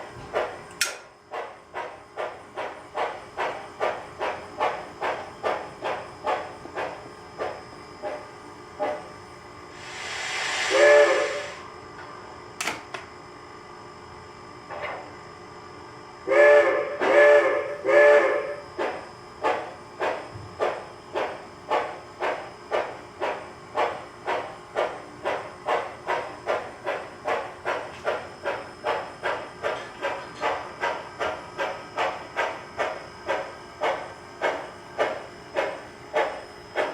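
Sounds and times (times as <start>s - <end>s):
steam hiss: 9.7s - 11.7s
steam locomotive chuffing: 9.7s - 11.7s, 16.3s - 36.9s
train whistle toots: 9.8s - 11.7s, 16.2s - 18.7s.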